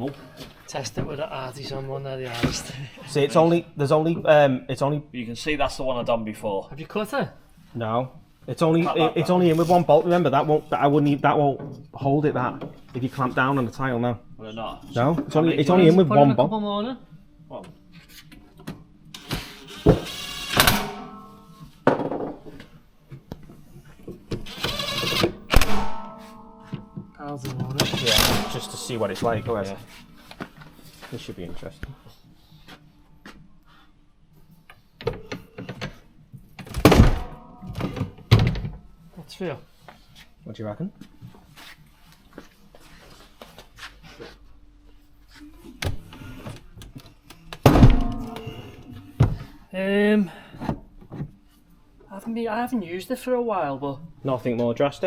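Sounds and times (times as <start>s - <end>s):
metal tile cutter clanking: 19.2s - 21.4s, 24.4s - 26.3s, 27.6s - 29.7s
thud: 36.8s - 38.8s, 47.7s - 49.4s.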